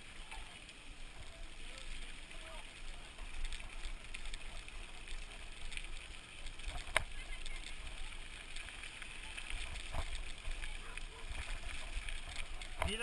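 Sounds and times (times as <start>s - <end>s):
mountain bike on dirt trail: 0.0s - 13.0s
tyre and gravel noise: 0.0s - 13.0s.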